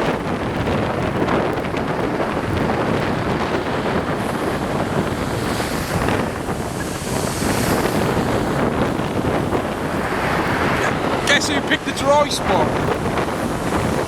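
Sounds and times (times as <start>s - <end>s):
waves breaking on shore: 0.0s - 14.0s
wind buffeting microphone: 0.0s - 14.0s
hiss of surf: 4.2s - 12.8s.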